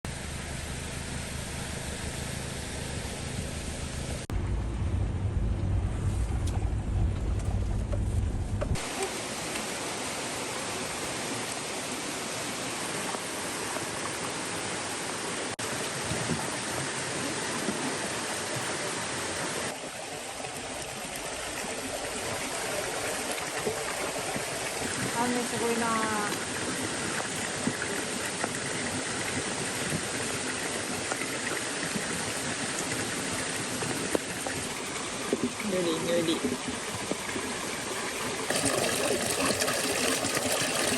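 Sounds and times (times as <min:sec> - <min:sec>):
low rumble with hum: 0:00.1 - 0:08.8
water rushing: 0:00.1 - 0:40.9.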